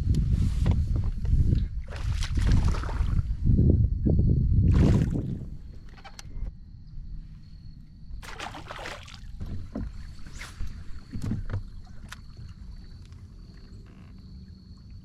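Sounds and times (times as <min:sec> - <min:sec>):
water splashing against hull: 0:00.7 - 0:03.4, 0:04.7 - 0:06.1, 0:08.2 - 0:15.0.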